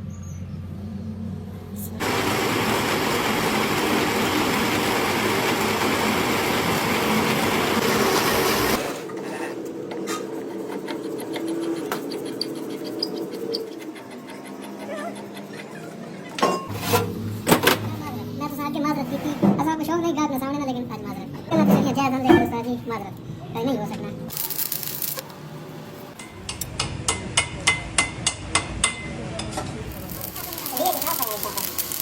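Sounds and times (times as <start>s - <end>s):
loud harsh grinding noise: 2.0s - 16.1s, 29.9s - 32.0s.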